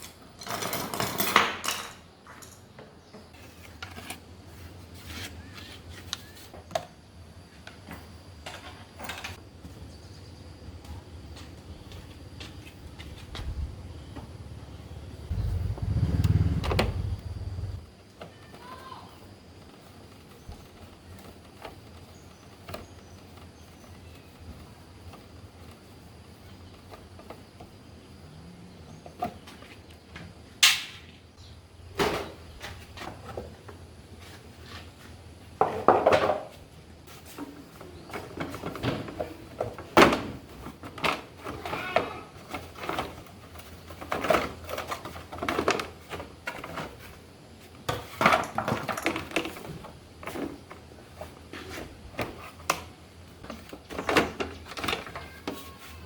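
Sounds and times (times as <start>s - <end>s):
tools and metal parts clinking: 0.0s - 2.8s.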